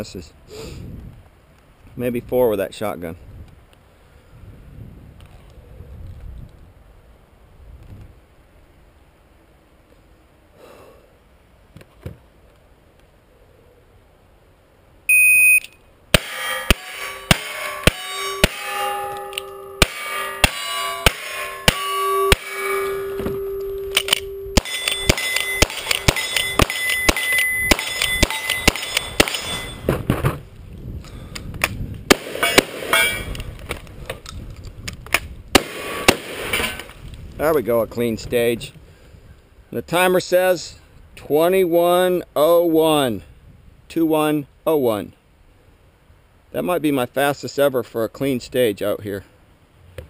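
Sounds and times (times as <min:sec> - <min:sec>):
shot timer beep: 0:15.1 - 0:15.8, 0:21.7 - 0:29.8
steel targets ringing: 0:16.1 - 0:29.9, 0:32.1 - 0:33.3
rapid gunshots: 0:24.6 - 0:29.6, 0:35.6 - 0:36.6.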